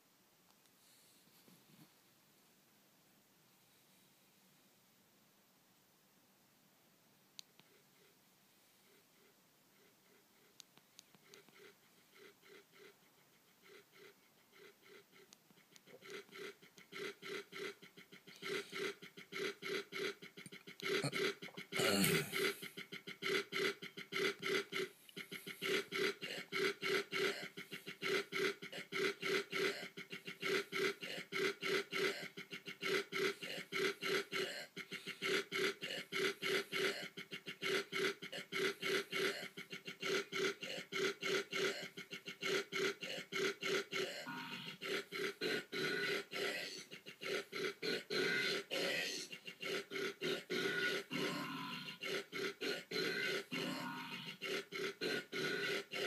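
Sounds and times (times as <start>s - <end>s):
beat of sampled burps: 20.4s - 22.6s, 43.4s - 56.0s
long burp dropping in pitch: 21.0s - 22.4s.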